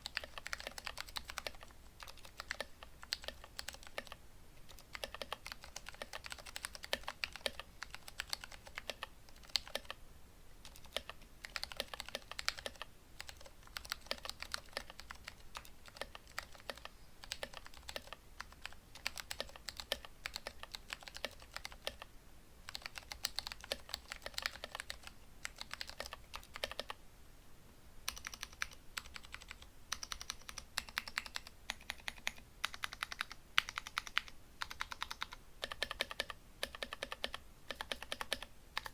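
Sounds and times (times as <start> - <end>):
typing on mechanical keyboard: 0.0 - 10.0, 10.6 - 27.0, 28.1 - 38.9.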